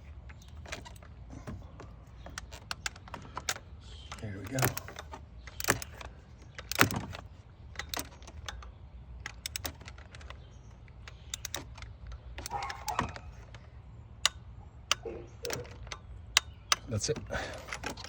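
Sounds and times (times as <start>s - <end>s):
light metallic rattles: 0.0s - 18.0s
ratchet wrench clicking: 2.3s - 13.6s.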